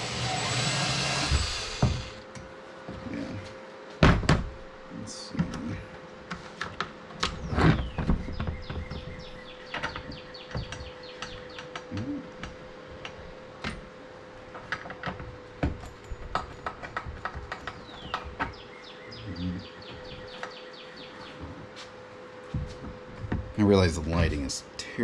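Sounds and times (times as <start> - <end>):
steady hum: 0.0 - 25.0
birds chirping: 7.3 - 12.6, 17.6 - 22.0.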